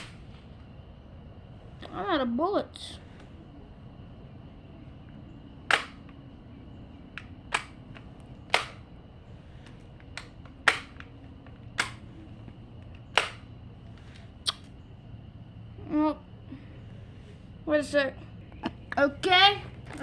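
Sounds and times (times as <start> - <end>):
gun mechanical clicks: 5.7 - 6.2, 7.2 - 8.8, 9.6 - 12.1, 12.8 - 13.5.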